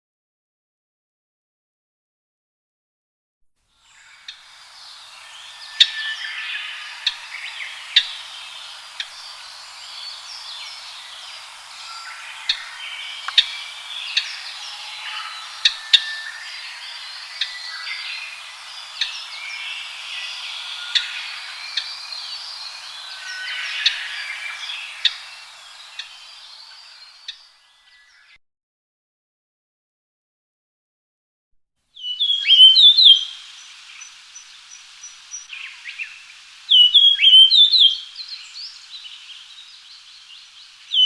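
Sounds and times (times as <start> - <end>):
loud sharp bird calls: 3.9 - 27.8, 32.0 - 41.0
birds chirping and whistling: 3.9 - 28.2, 32.0 - 41.0.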